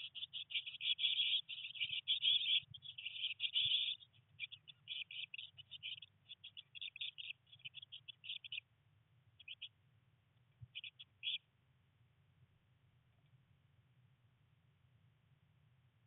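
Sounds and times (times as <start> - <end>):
birds chirping: 0.0 - 8.6, 9.4 - 9.7, 10.6 - 11.4.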